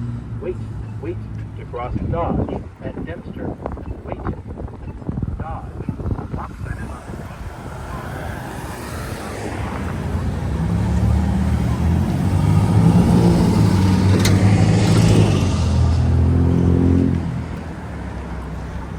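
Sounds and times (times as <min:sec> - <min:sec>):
vehicle passing with heavy engine: 0:05.5 - 0:18.9.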